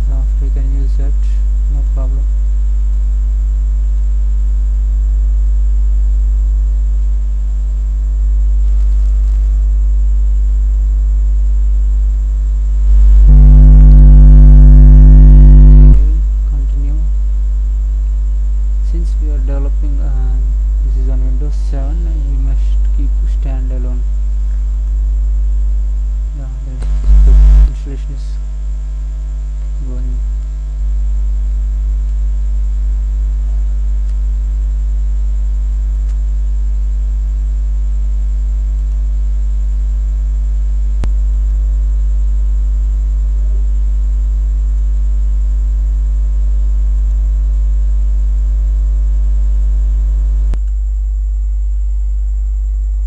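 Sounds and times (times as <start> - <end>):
electrical mains hum: 0.0 - 53.0
loud noise burst: 12.7 - 16.9, 26.4 - 28.0
faint click: 26.8 - 27.2, 36.0 - 36.2, 50.5 - 50.8.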